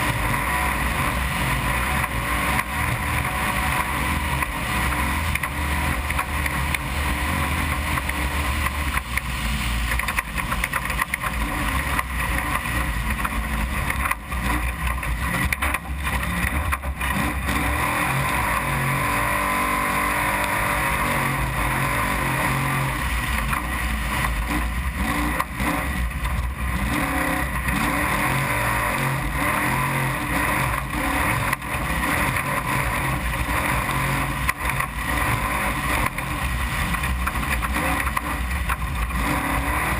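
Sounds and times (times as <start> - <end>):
rushing noise: 0.0 - 39.9
truck engine revving: 0.0 - 39.9
small knocks and rattles: 9.9 - 17.0.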